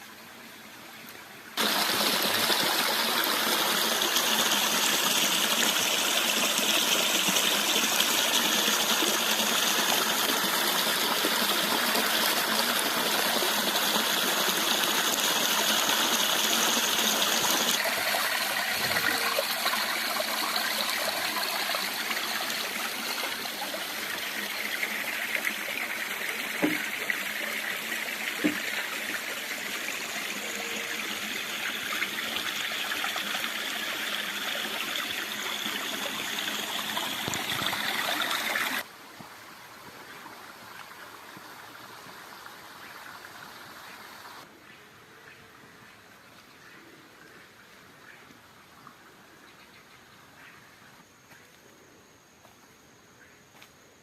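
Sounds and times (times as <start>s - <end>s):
stream rushing over rocks: 1.6s - 44.5s.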